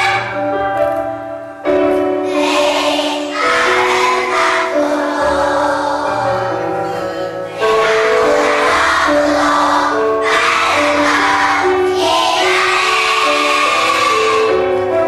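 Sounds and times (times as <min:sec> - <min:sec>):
musical accompaniment: 0:00.0 - 0:15.0
group of voices singing: 0:02.4 - 0:06.4, 0:07.5 - 0:14.7.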